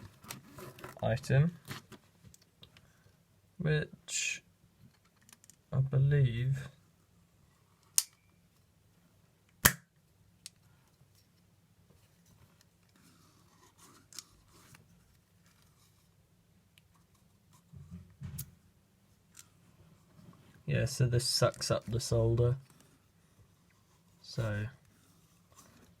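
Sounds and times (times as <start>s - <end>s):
sharp plastic snap: 9.6s - 10.6s.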